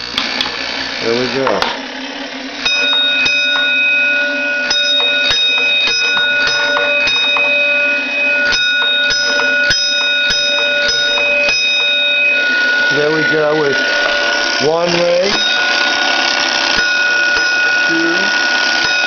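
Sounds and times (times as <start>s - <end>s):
electric gong bell ringing: 0.0s - 19.0s.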